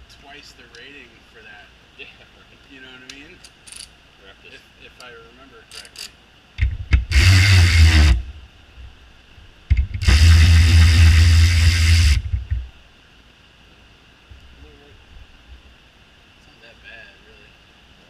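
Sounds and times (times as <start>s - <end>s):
cordless ratchet whirring: 5.7s - 8.3s, 9.7s - 12.6s.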